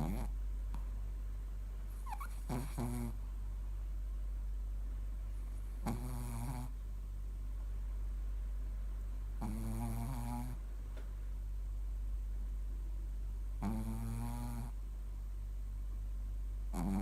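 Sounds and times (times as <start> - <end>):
dog snoring: 0.0 - 0.4, 2.0 - 3.2, 5.6 - 6.8, 9.4 - 10.6, 13.6 - 14.8, 16.7 - 17.0.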